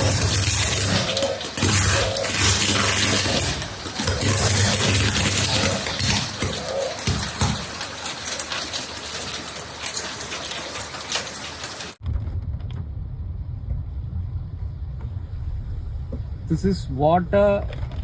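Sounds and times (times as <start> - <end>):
heavy rain pouring: 0.0 - 12.0
low steady rumble: 12.0 - 18.0.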